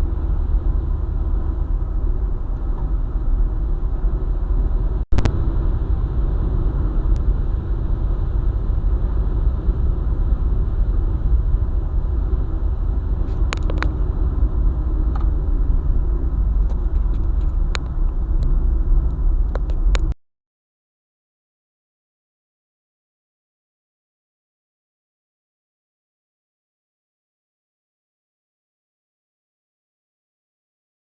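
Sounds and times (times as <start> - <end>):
road and engine rumble: 0.0 - 20.2.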